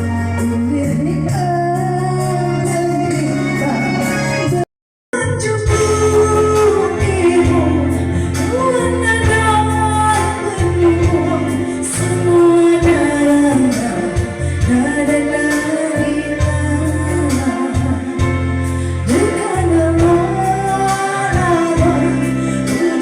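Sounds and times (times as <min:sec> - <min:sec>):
band with steady bass line: 0:00.0 - 0:23.0
person singing: 0:00.0 - 0:23.0.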